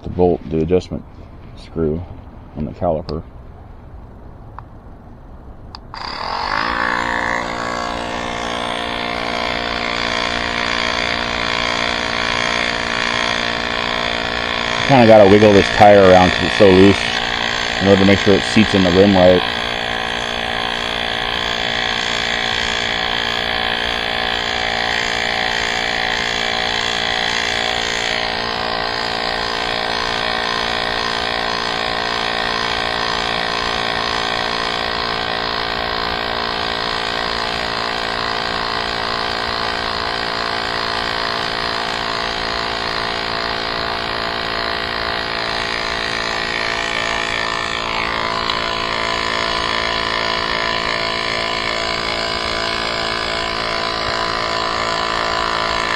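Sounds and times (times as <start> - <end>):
small motor humming: 5.7 - 55.9.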